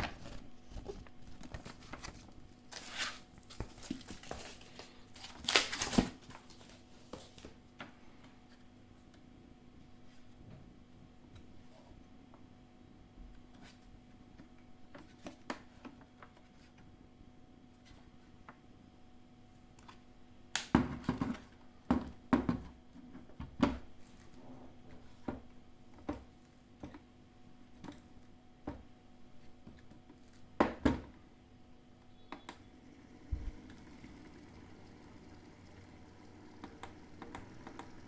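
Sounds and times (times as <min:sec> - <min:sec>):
faint steady hum: 0:21.2 - 0:38.0.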